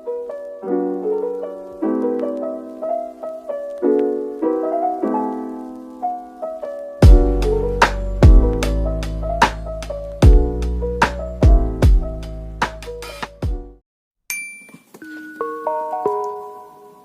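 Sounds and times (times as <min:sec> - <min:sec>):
gentle piano playing: 0:00.0 - 0:13.8, 0:14.9 - 0:17.0
drum beat: 0:07.0 - 0:09.6, 0:10.2 - 0:13.8
bass: 0:07.0 - 0:13.8.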